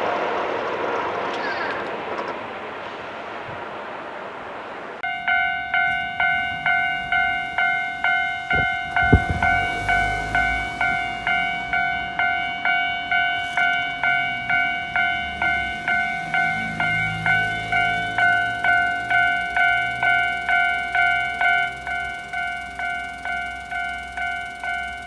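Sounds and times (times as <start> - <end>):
rushing noise: 0.0 - 24.8
level-crossing warning bell clanging: 5.0 - 25.0
low thuds: 6.0 - 16.1.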